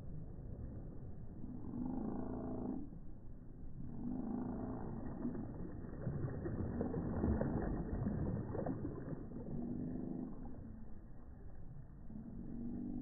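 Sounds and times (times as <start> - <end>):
small waves washing in: 4.9 - 11.8.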